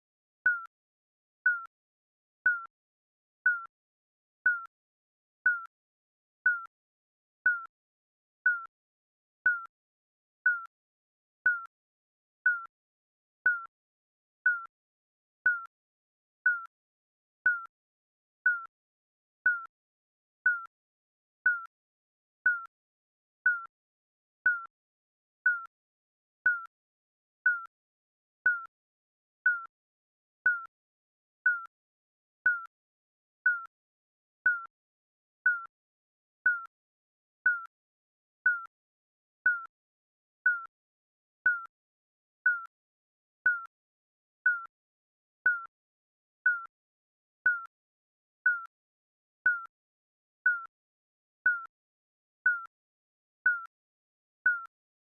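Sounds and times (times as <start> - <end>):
electronic timer ticking: 0.5 - 0.7, 1.5 - 1.7, 2.5 - 2.7, 3.5 - 3.7, 4.5 - 4.7, 5.5 - 5.7, 6.5 - 6.7, 7.5 - 7.7, 8.5 - 8.7, 9.5 - 9.7, 10.5 - 10.7, 11.5 - 11.7, 12.5 - 12.7, 13.5 - 13.7, 14.5 - 14.7, 15.5 - 15.7, 16.5 - 16.7, 17.5 - 17.7, 18.5 - 18.7, 19.5 - 19.7, 20.5 - 20.7, 21.5 - 21.7, 22.5 - 22.7, 23.5 - 23.7, 24.5 - 24.7, 25.5 - 25.7, 26.5 - 26.7, 27.5 - 27.7, 28.5 - 28.7, 29.5 - 29.7, 30.5 - 30.7, 31.5 - 31.7, 32.5 - 32.7, 33.5 - 33.7, 34.5 - 34.7, 35.5 - 35.7, 36.5 - 36.7, 37.5 - 37.7, 38.5 - 38.7, 39.5 - 39.7, 40.5 - 40.7, 41.5 - 41.7, 42.5 - 42.7, 43.5 - 43.7, 44.5 - 44.7, 45.5 - 45.7, 46.5 - 46.7, 47.5 - 47.7, 48.5 - 48.7, 49.5 - 49.7, 50.5 - 50.7, 51.5 - 51.7, 52.5 - 52.7, 53.5 - 53.7, 54.5 - 54.7.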